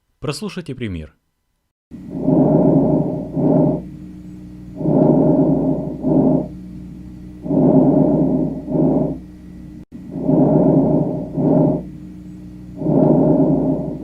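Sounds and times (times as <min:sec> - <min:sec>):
faint steady hum: 0:00.9 - 0:14.0
breath sounds through stethoscope: 0:02.1 - 0:03.9, 0:04.8 - 0:06.5, 0:07.4 - 0:09.2, 0:10.1 - 0:11.9, 0:12.8 - 0:14.0.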